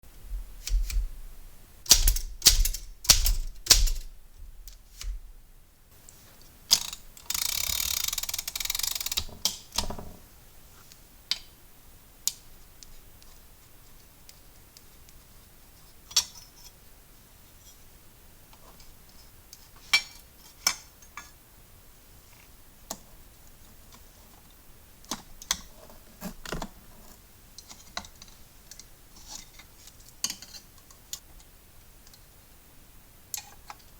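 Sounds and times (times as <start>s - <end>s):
typewriter key clacks: 1.9s - 4.1s.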